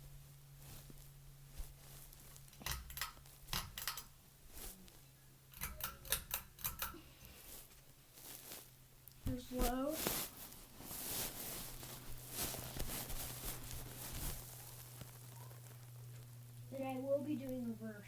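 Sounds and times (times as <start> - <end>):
steady low hum: 0.0 - 18.0
pull-chain clicks and rattle: 2.5 - 4.2, 5.5 - 7.0.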